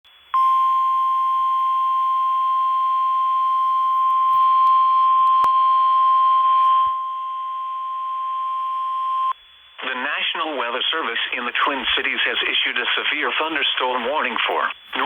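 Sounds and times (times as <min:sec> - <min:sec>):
steady high alarm beep: 0:00.3 - 0:09.8
radio hiss: 0:09.8 - 0:15.0.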